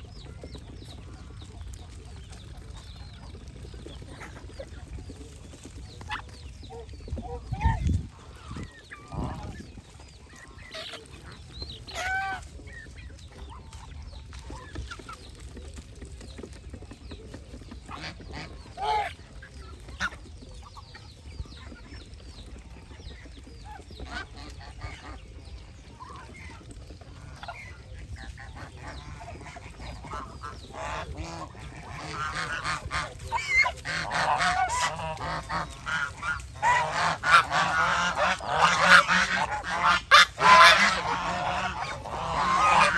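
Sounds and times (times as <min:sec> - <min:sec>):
geese honking: 0:27.1 - 0:42.9.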